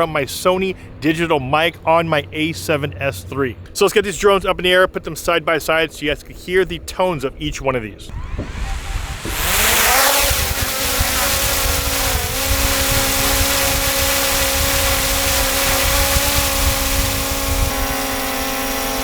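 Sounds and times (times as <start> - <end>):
drone propellers whining: 8.1 - 19.0.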